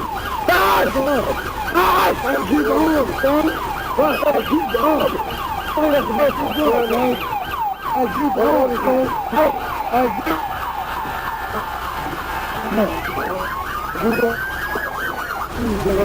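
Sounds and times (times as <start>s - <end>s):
police siren yelping: 0.0s - 16.0s.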